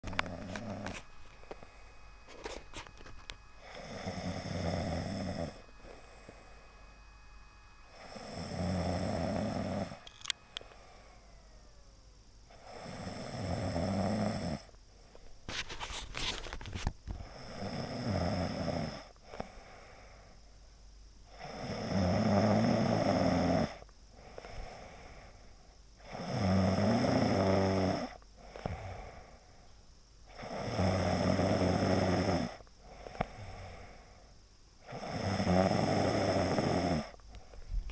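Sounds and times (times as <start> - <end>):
heavy rasping snoring: 0.1 - 1.0, 3.6 - 5.6, 8.0 - 10.0, 12.5 - 14.7, 17.2 - 19.6, 21.3 - 24.9, 26.0 - 29.3, 30.3 - 34.0, 34.8 - 37.2.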